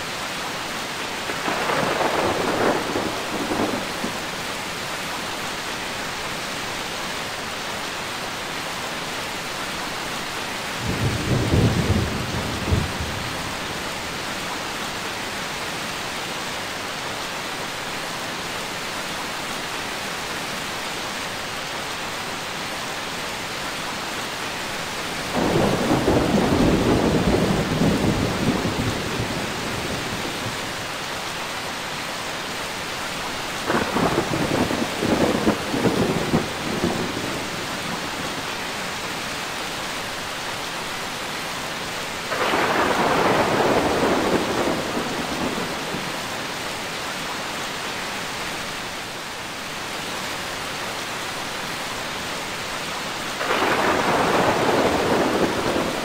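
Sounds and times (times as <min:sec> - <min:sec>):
steady rain falling: 0:00.0 - 0:56.0
thunder rumbling: 0:01.3 - 0:04.4, 0:10.8 - 0:13.7, 0:25.3 - 0:30.6, 0:33.7 - 0:38.2, 0:42.3 - 0:46.2, 0:53.4 - 0:56.0.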